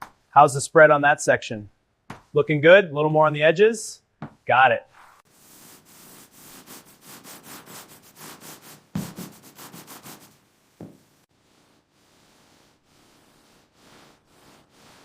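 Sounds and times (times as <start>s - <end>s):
dull thump: 2.1s - 2.3s, 4.2s - 4.4s, 9.0s - 9.3s.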